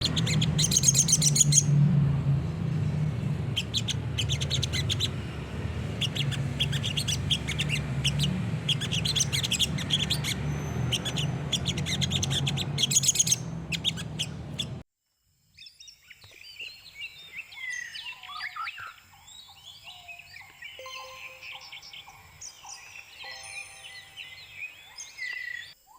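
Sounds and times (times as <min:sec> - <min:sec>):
bird chirping rapidly: 0:00.0 - 0:14.8, 0:20.7 - 0:25.8
gliding whistled notes: 0:20.8 - 0:24.8.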